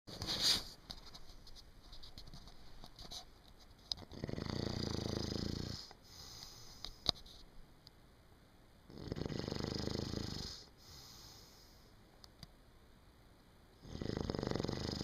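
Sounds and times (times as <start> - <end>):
person snoring: 4.1 - 6.8, 8.9 - 11.7, 13.8 - 15.0
breathy hiss with click: 5.3 - 8.0, 10.0 - 12.6.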